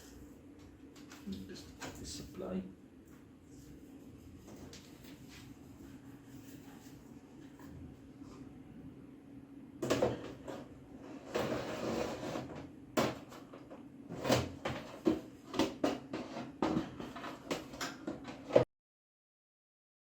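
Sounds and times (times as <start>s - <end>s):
scraping on computer case: 9.8s - 18.6s.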